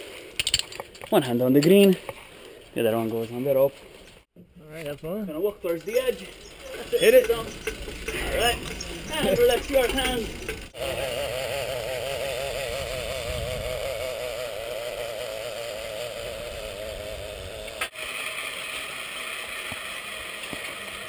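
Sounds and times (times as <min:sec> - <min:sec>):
zipline pulleys whirring: 0:05.8 - 0:21.0
wind rushing over microphone: 0:12.4 - 0:14.2.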